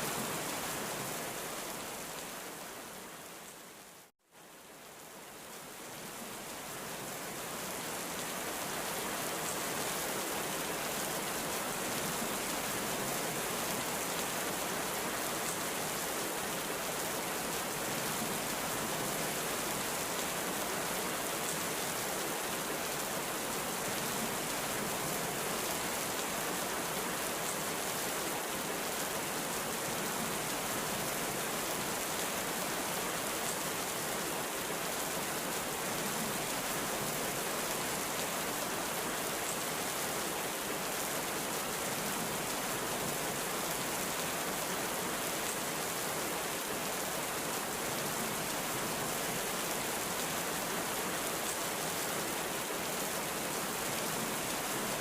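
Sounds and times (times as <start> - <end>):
heavy rain falling: 4.8 - 55.0.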